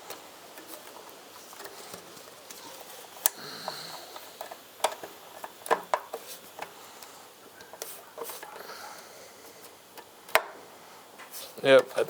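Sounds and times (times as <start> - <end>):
hand tools clicking on bolts: 0.0 - 6.8.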